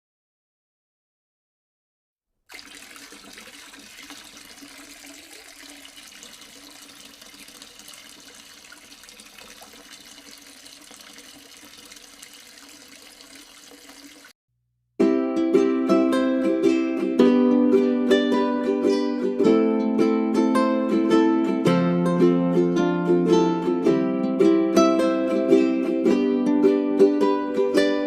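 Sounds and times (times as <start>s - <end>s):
fountain water splashing: 2.5s - 14.3s
ukulele music: 15.0s - 28.0s.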